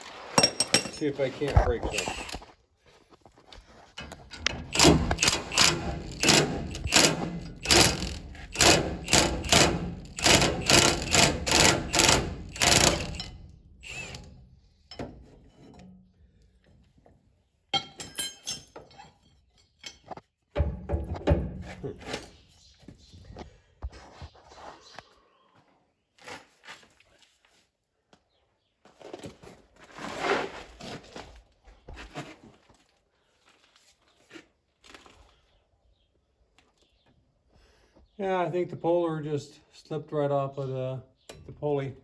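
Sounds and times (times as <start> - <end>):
impact wrench hammering: 1.9 - 2.4, 4.3 - 14.3.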